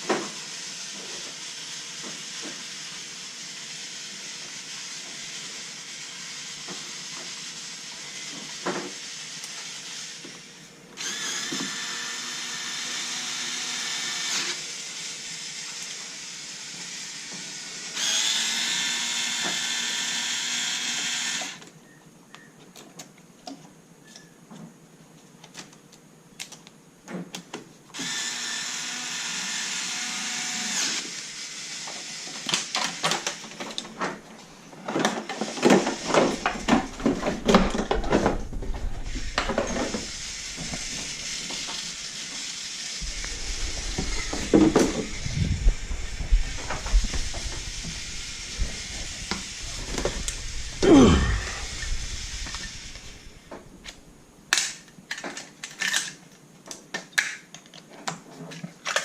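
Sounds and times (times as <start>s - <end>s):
electric screwdriver whirring: 0.4s - 21.6s, 28.0s - 33.0s, 35.3s - 54.1s.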